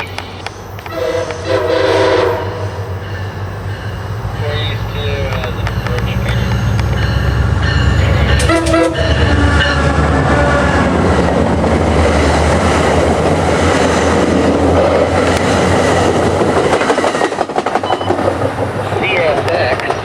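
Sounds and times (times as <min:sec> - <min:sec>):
train wheels clattering: 0:00.0 - 0:20.0
train air horn: 0:00.8 - 0:11.1.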